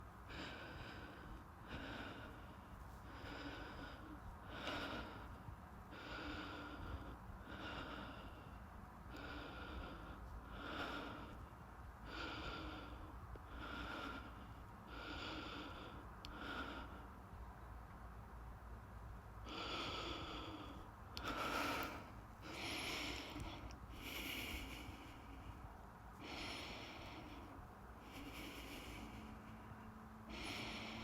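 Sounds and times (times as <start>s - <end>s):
man breathing heavily: 0.0s - 17.4s, 19.4s - 31.0s.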